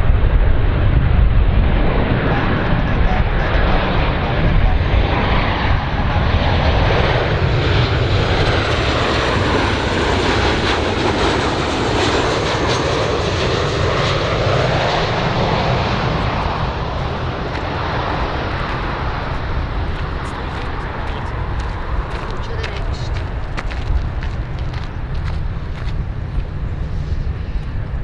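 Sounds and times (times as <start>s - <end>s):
airplane engines roaring: 0.0s - 28.0s.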